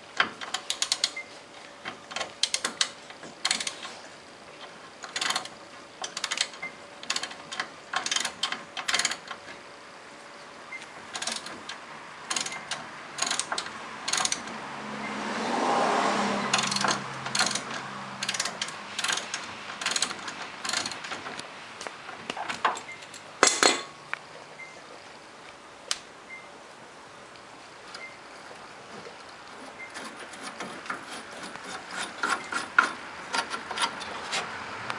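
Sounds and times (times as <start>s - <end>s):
ratchet clicking: 0.4s - 1.2s, 2.4s - 4.0s, 5.0s - 9.4s, 11.1s - 14.5s, 16.5s - 21.2s.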